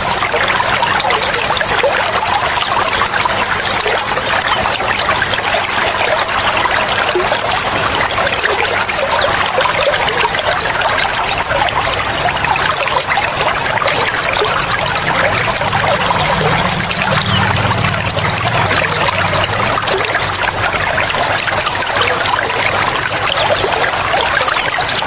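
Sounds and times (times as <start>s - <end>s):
running water trickling: 0.0s - 25.0s
small bird chirping: 13.9s - 17.7s.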